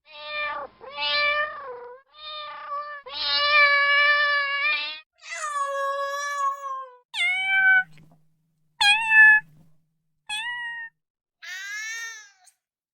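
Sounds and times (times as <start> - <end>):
cat meowing: 0.1 - 8.0, 8.8 - 9.6, 10.3 - 12.6.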